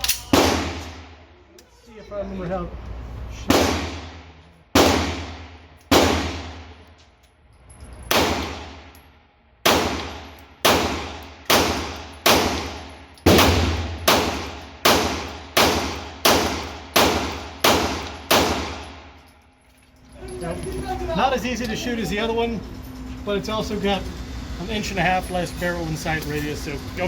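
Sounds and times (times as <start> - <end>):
handgun shots echoing: 9.7 - 19.0.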